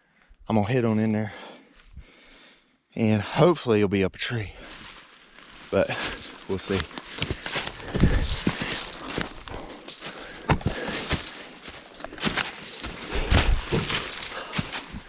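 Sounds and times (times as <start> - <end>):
footsteps crunching dry leaves: 4.7 - 15.0
gear jingling: 5.4 - 15.0
heavy thuds: 6.1 - 15.0.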